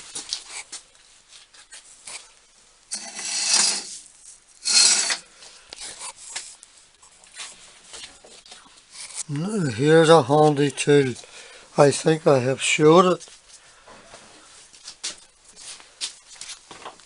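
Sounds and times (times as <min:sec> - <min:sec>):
tools scraping and rattling: 0:02.9 - 0:05.3.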